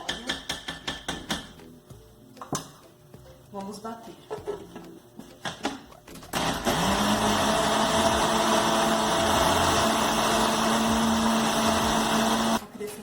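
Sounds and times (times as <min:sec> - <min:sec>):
blender motor humming: 0:06.3 - 0:12.6.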